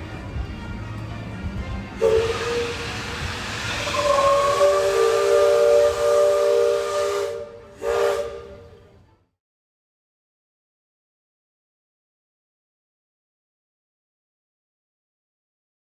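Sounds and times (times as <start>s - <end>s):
steam hissing: 2.0s - 8.6s
chime steam whistle blowing: 2.0s - 8.9s.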